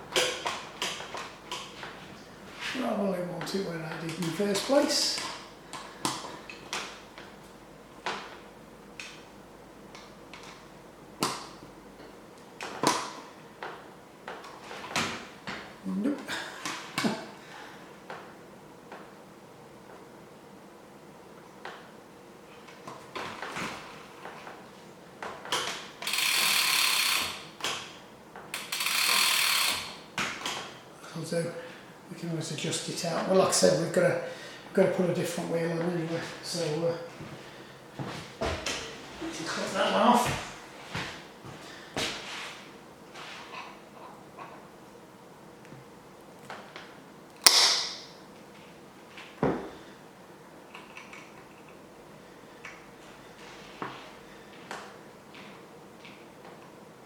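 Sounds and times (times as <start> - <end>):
bicycle gear clicks: 25.6 - 27.8, 28.5 - 30.6
bicycle chain whirring and ratcheting: 26.0 - 27.4, 28.5 - 30.0
cutters snapping: 47.4 - 48.0.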